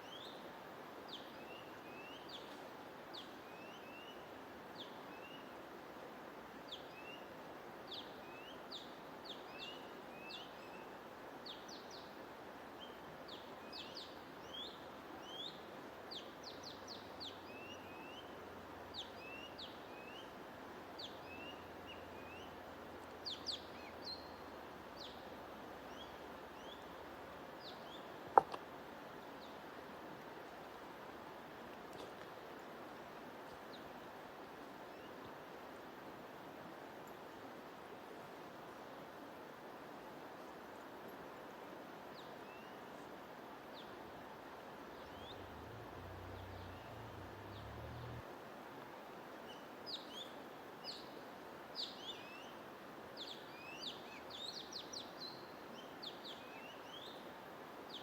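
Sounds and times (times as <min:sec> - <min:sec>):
small birds chirping: 0:45.0 - 0:48.2.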